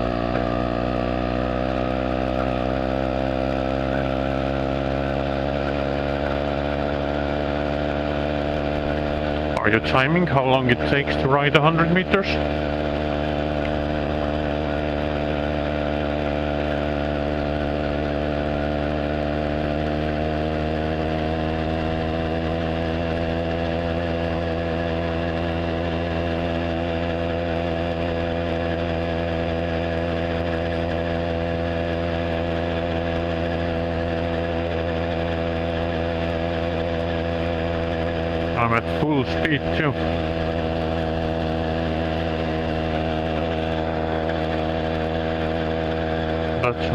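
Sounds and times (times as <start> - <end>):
moped engine at full throttle: 0.0 - 46.9.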